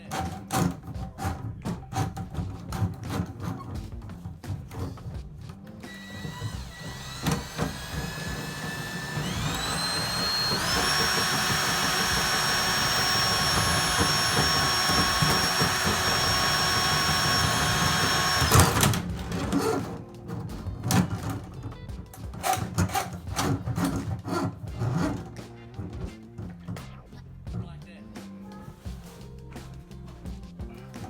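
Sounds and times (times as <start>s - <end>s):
drain cleaning machine motor whine: 5.8s - 20.0s.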